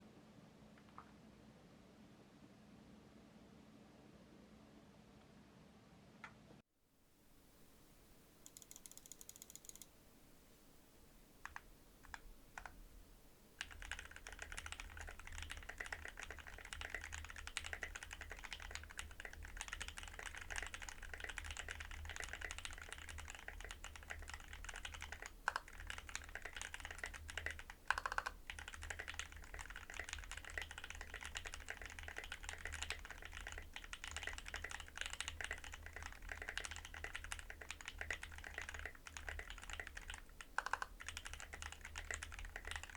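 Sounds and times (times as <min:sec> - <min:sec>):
typing on mechanical keyboard: 0:08.4 - 0:09.9, 0:11.4 - 0:12.8, 0:13.6 - 0:42.9.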